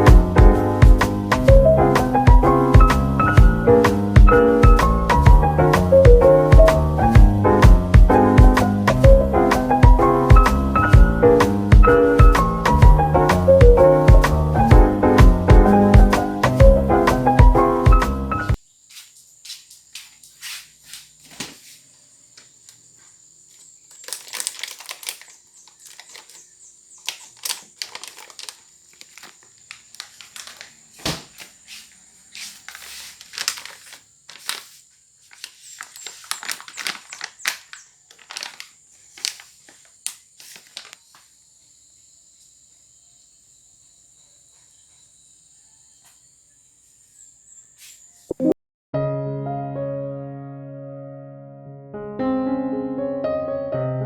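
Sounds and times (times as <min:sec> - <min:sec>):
crinkling rustles: 0:18.9 - 0:41.4.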